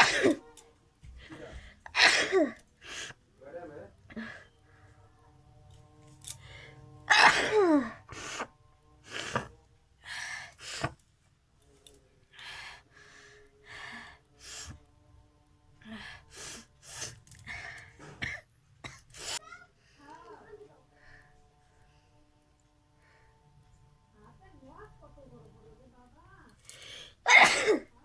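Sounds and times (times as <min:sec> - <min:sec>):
person sneezing loudly: 0:00.0 - 0:00.4, 0:01.9 - 0:02.6, 0:07.1 - 0:08.4, 0:27.3 - 0:27.9.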